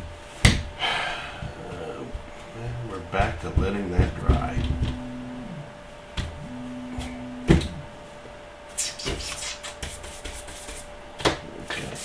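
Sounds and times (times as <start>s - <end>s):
short low hum: 0.0s - 9.6s
objects knocking on workbench: 3.2s - 5.1s, 7.0s - 7.8s.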